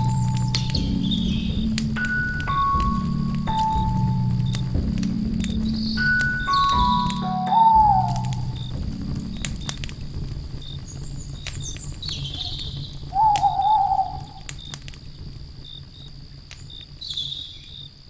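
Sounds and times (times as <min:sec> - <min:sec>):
low rumble: 0:00.0 - 0:15.7
crickets trilling: 0:00.0 - 0:18.0
wood fire crackling and popping: 0:00.0 - 0:18.0
wavering bird call: 0:05.6 - 0:08.8, 0:12.2 - 0:14.5.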